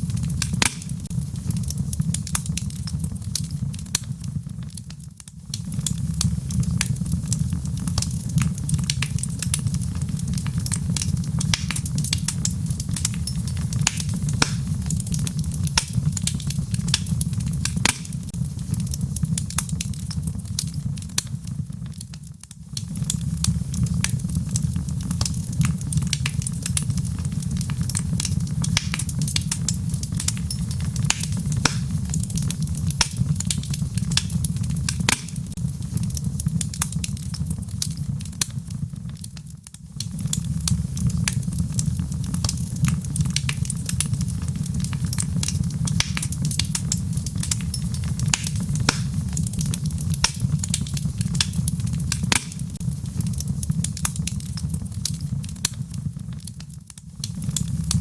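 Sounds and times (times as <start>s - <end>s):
fire crackles and pops: 0.0s - 58.0s
fire flames rumbling: 0.0s - 58.0s.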